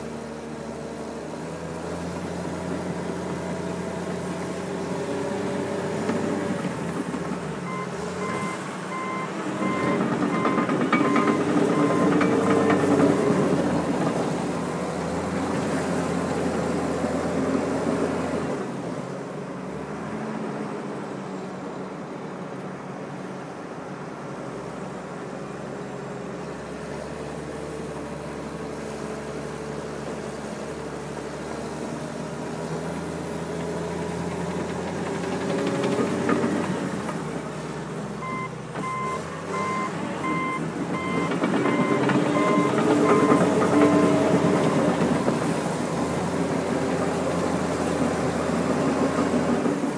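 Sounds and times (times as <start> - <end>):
dozer diesel engine under load: 0.0 - 49.9
backup alarm beeping: 7.7 - 12.1, 38.2 - 44.8.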